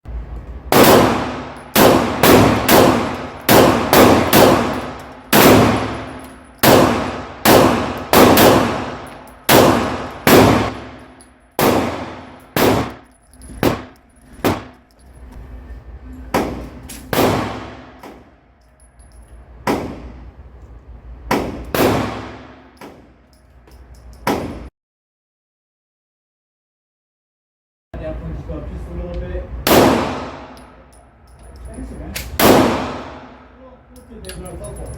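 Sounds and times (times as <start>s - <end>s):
pistol shots: 0.7s - 11.0s, 11.6s - 13.0s, 16.3s - 18.3s, 21.3s - 23.0s, 29.6s - 30.6s, 32.4s - 33.4s.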